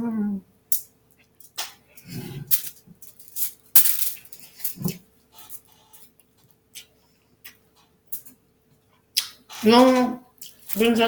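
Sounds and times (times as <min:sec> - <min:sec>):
chewing and mouth noises: 0:09.2 - 0:09.7, 0:10.4 - 0:11.0.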